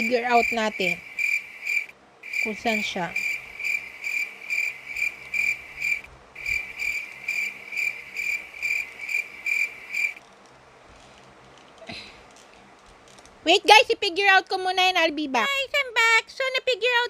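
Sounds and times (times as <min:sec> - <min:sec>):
cricket chirping: 0:00.0 - 0:10.2.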